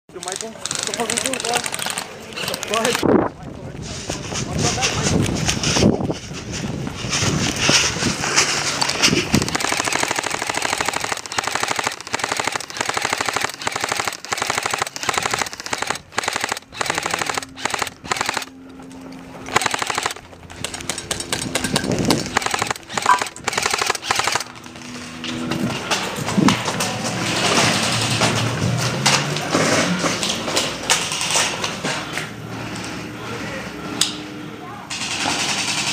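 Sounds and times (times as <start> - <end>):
airsoft rifles firing bursts: 0.2 - 3.0, 9.4 - 18.5, 19.5 - 24.6, 34.9 - 35.9.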